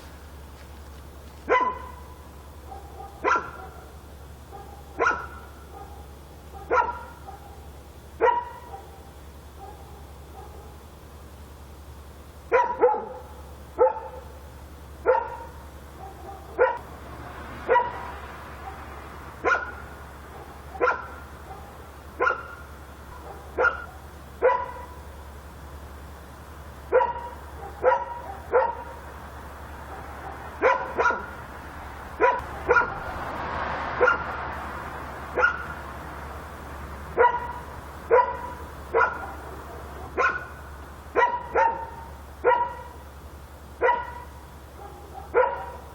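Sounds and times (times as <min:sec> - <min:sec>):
dog barking: 0:01.4 - 0:10.8, 0:12.5 - 0:14.4, 0:15.0 - 0:16.9, 0:17.6 - 0:25.0, 0:26.9 - 0:29.1, 0:29.8 - 0:31.4, 0:32.2 - 0:33.2, 0:34.0 - 0:34.4, 0:35.4 - 0:35.8, 0:37.2 - 0:43.0, 0:43.8 - 0:45.9.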